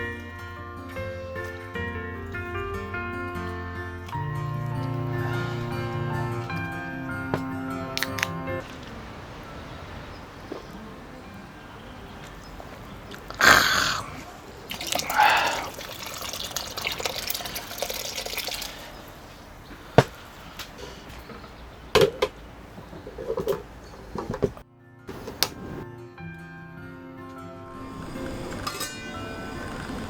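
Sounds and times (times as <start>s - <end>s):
liquid pouring and splashing: 14.6s - 19.2s.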